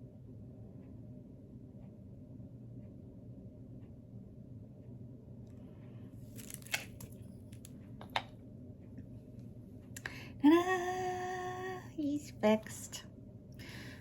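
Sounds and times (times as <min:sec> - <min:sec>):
low room hum: 0:00.0 - 0:14.0
woman singing held note: 0:10.4 - 0:11.9.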